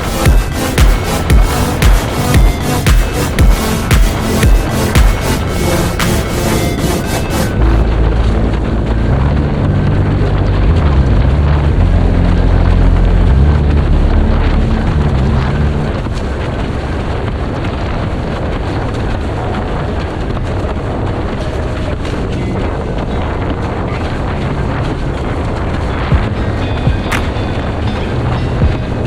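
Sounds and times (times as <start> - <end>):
background music with bass line: 0.0 - 16.0, 26.1 - 29.0
wind buffeting microphone: 7.6 - 29.0.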